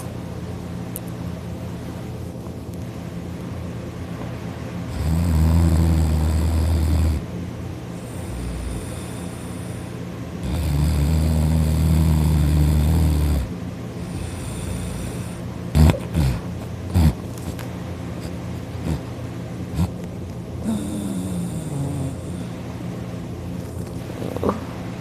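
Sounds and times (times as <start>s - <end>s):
person snoring loudly: 4.9s - 7.2s, 8.0s - 17.2s, 18.8s - 19.1s, 19.8s - 20.0s, 20.6s - 22.5s
quiet breathing: 7.9s - 10.1s, 13.4s - 16.7s, 20.6s - 22.8s.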